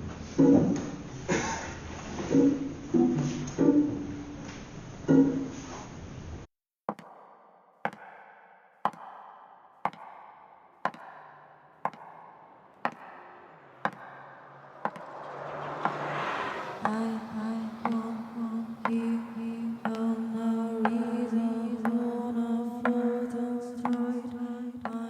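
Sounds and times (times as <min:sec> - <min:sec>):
plucked notes: 0:02.3 - 0:04.4
noisy swell: 0:11.0 - 0:25.0
faint low drone: 0:11.1 - 0:25.0
regular tick: 0:19.8 - 0:20.1.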